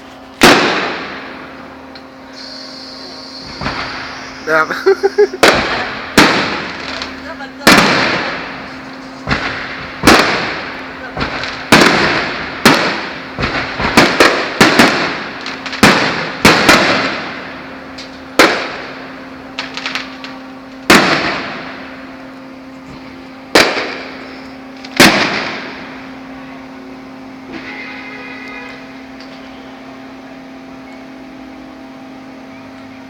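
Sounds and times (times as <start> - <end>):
steady low hum: 0.0 - 33.0
fireworks bangs echoing: 0.4 - 1.5, 3.4 - 17.7, 18.3 - 20.3, 20.9 - 22.0, 23.5 - 26.0.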